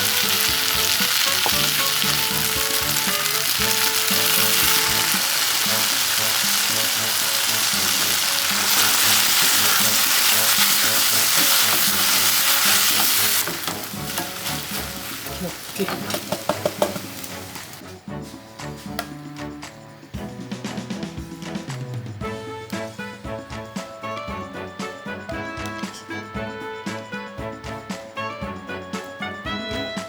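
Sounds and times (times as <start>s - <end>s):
food being stirred: 0.0s - 18.0s
food sizzling in a pan: 0.0s - 18.0s.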